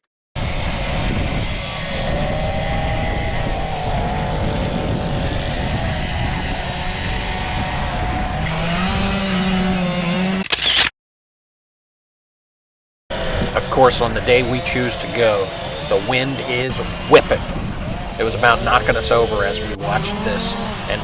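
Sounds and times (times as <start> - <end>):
chainsaws cutting wood: 0.4 - 5.8, 8.4 - 10.9, 14.4 - 17.6
wind rumbling on microphone: 0.4 - 9.9, 13.1 - 21.0
low steady saw engine: 0.4 - 10.9, 13.1 - 21.0.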